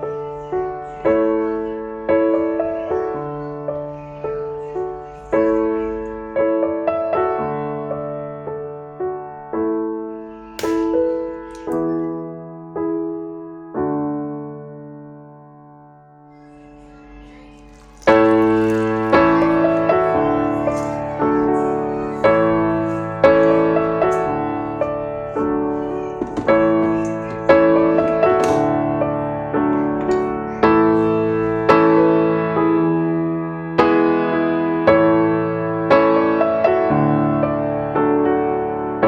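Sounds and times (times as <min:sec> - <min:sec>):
piano chords: 0:00.0 - 0:39.0.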